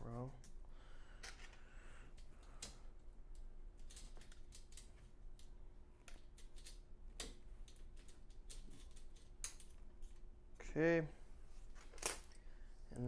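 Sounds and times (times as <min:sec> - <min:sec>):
faint steady hum: 0:00.0 - 0:13.0
small parts clicking and tapping: 0:01.2 - 0:10.2.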